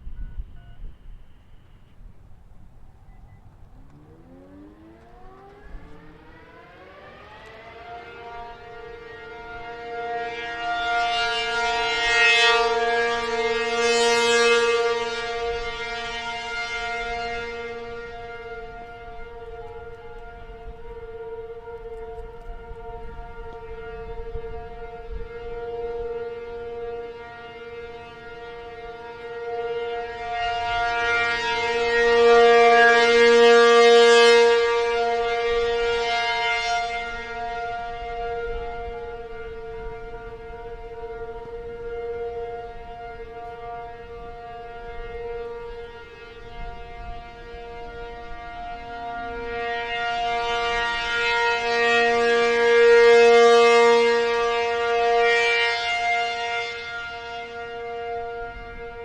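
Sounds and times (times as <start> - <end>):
warning siren steady tone: 0.0 - 59.0.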